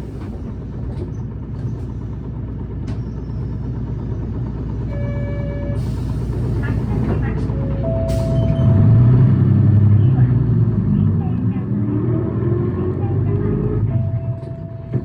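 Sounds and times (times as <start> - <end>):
bus engine running: 0.0 - 15.0
short electronic tone: 7.8 - 9.6.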